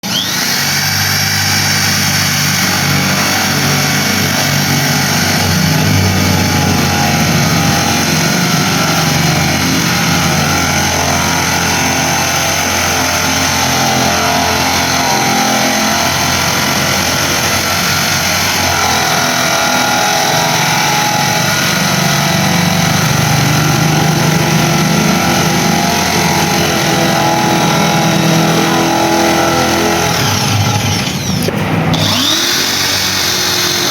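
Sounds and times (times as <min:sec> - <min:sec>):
electric motor whining: 0:00.0 - 0:33.9.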